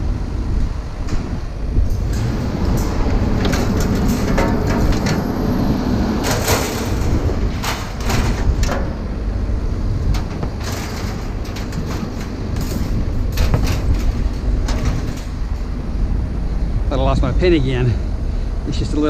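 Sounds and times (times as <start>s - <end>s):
steady low rumble: 0.0s - 19.0s
metallic clanks and rattles: 1.0s - 16.3s.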